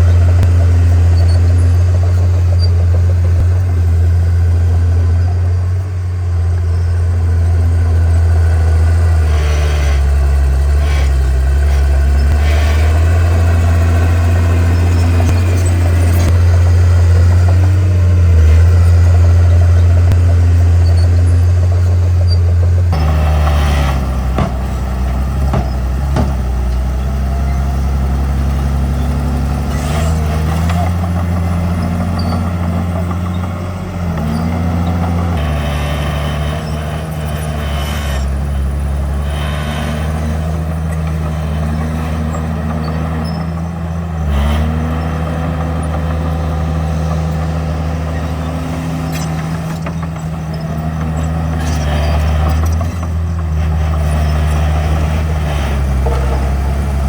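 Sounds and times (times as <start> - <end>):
heavy diesel engine working: 0.0 - 57.0.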